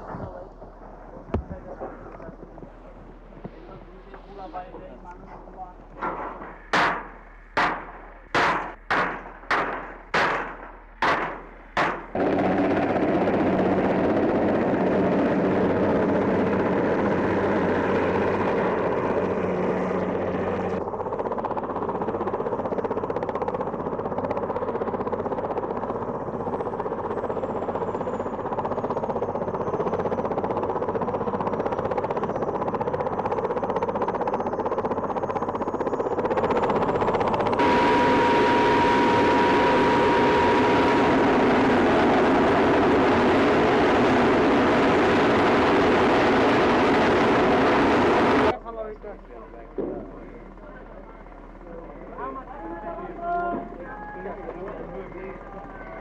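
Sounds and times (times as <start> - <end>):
steady noisy din: 0.0 - 20.6, 36.3 - 56.0.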